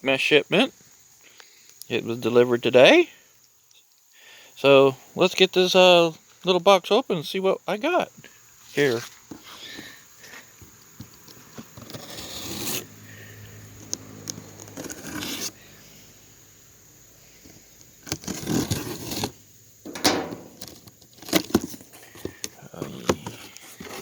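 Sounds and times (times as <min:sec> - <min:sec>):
cardboard box tearing and scraping: 0:11.7 - 0:12.9, 0:14.7 - 0:15.6, 0:18.0 - 0:19.4, 0:23.2 - 0:24.0.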